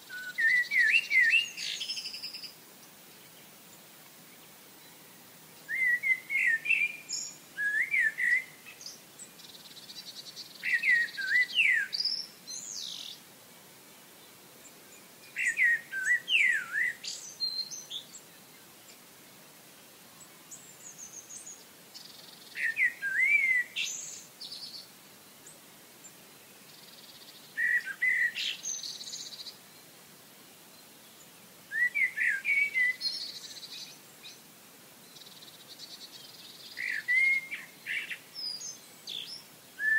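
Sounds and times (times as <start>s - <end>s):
songbird whistled phrases: 0.1s - 2.4s, 5.7s - 9.0s, 10.6s - 13.1s, 15.4s - 18.1s, 22.5s - 24.8s, 27.6s - 29.5s, 31.7s - 33.9s, 36.7s - 39.9s
high bird twittering: 36.7s - 39.9s.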